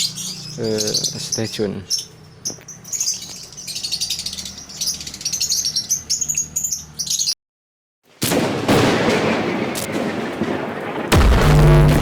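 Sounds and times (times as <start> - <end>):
lovebirds chirping: 0.0 - 7.4
loud noisy burst: 11.0 - 12.0.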